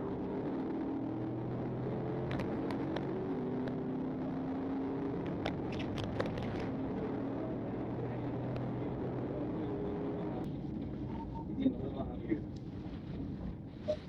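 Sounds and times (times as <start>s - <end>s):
car engine and road noise: 0.0s - 14.0s.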